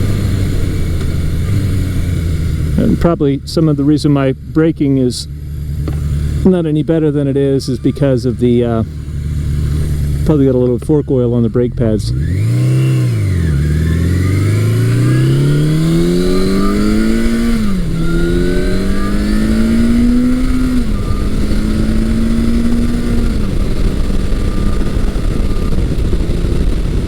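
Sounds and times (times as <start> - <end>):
motorcycle engine accelerating: 0.0 - 27.0
wind rush: 12.2 - 27.0.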